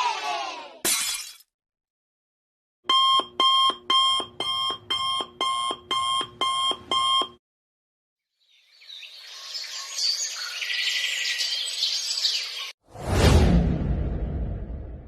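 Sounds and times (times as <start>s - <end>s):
alarm clock beeps: 2.9s - 7.4s.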